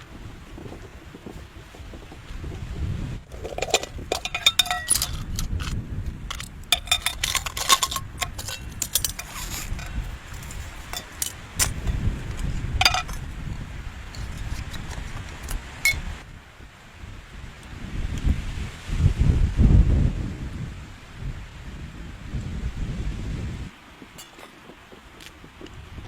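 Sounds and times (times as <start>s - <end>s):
wind rumble on microphone: 0.0s - 26.0s
light metallic clinks and jingles: 3.6s - 12.0s, 24.2s - 24.6s.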